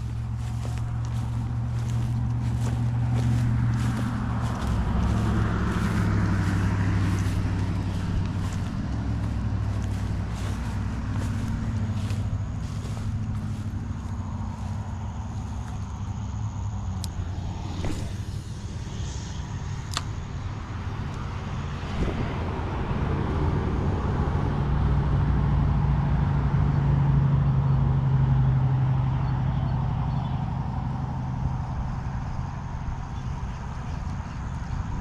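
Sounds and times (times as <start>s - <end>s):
low rumble: 0.0s - 25.4s
vehicle engine hum passing: 0.0s - 35.0s.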